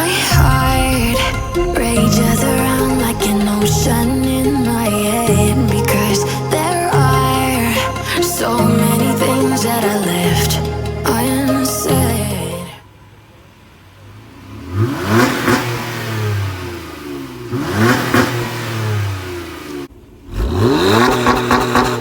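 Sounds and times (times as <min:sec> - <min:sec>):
car engine revving: 0:00.0 - 0:11.7, 0:14.1 - 0:22.0
intro music: 0:00.0 - 0:12.7.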